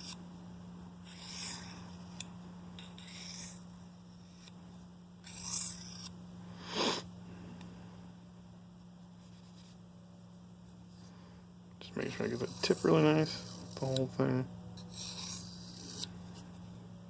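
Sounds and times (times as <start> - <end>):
knife scraping on sharpening stone: 1.0 - 3.7, 5.2 - 6.1, 14.8 - 16.1.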